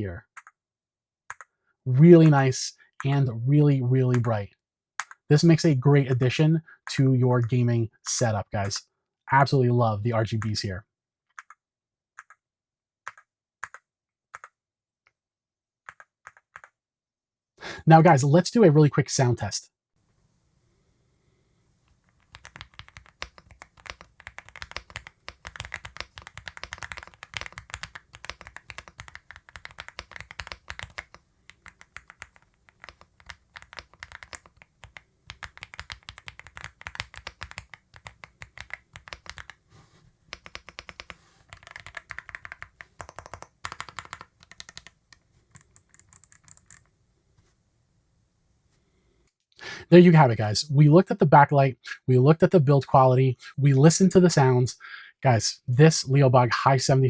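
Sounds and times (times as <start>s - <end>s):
mechanical keyboard typing: 0.3s - 0.6s, 11.3s - 11.6s, 12.2s - 12.4s, 13.1s - 14.6s, 15.9s - 16.8s, 22.1s - 39.6s, 40.3s - 46.9s.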